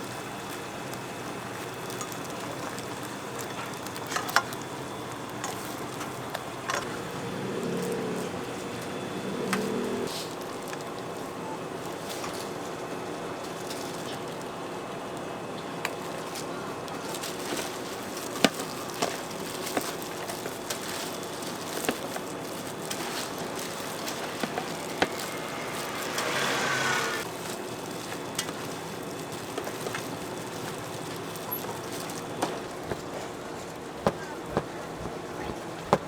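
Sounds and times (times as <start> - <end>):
busy street stall background: 0.0 - 36.0
clicks and knocks of food preparation: 0.5 - 7.0, 15.8 - 26.4, 27.4 - 36.0
hissing with faint rising whine: 6.9 - 10.1.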